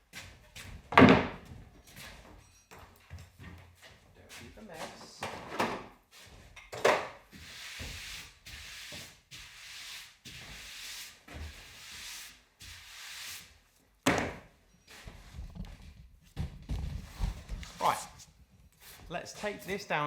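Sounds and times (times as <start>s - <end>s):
soft bumps: 15.1s - 17.8s.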